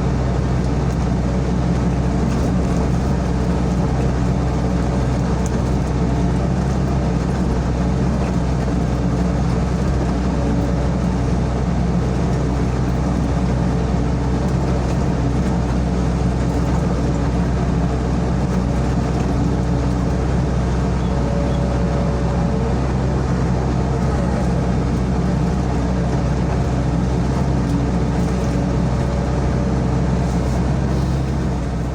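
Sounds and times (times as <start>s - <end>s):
excavator diesel engine running: 0.0s - 31.9s.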